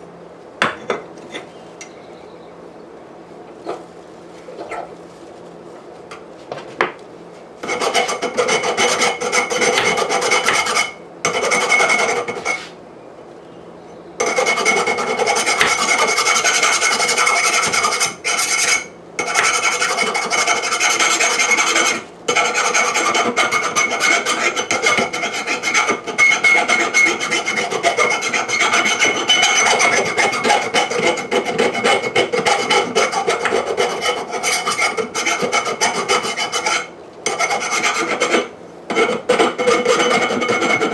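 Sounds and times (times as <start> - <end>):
grinder scraping steel: 14.2 - 40.9.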